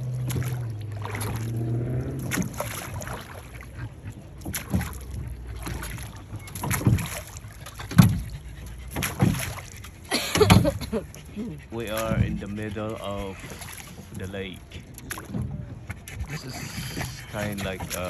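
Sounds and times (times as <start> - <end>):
low rumble: 0.0 - 6.6
water splashes: 0.0 - 18.0
oar knocks: 4.4 - 10.9.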